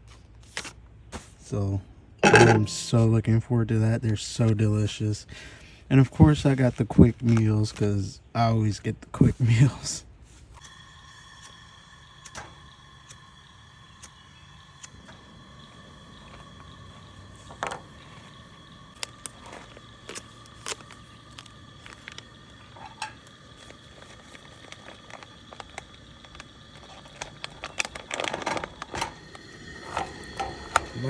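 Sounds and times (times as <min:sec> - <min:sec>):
pots and utensils clattering: 0:02.2 - 0:03.2, 0:15.0 - 0:18.4, 0:19.0 - 0:31.0.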